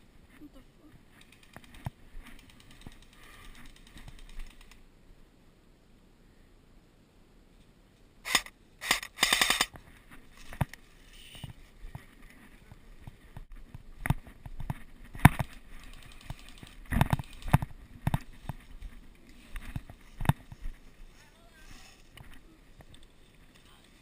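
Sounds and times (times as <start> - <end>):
airsoft guns firing: 8.3 - 9.7.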